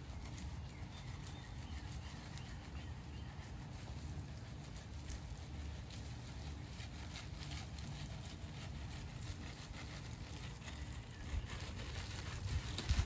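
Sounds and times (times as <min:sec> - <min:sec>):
rustling and ticking: 0:00.0 - 0:13.0
wind rumble on microphone: 0:06.9 - 0:13.0.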